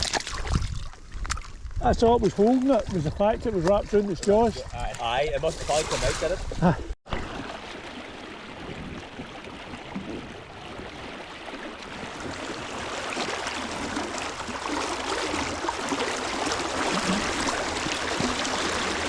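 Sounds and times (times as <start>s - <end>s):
river water running and splashing: 7.1s - 19.0s.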